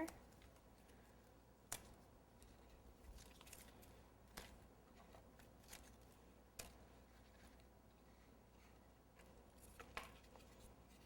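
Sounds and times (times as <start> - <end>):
tape ticking and crinkling: 0.0 - 8.2.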